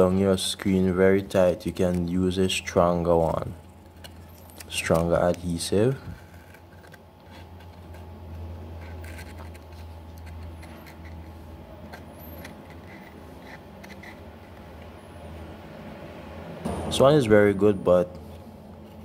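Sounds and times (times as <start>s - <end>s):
steady low hum: 0.0s - 19.0s
small tools scratching and clicking: 1.6s - 15.0s.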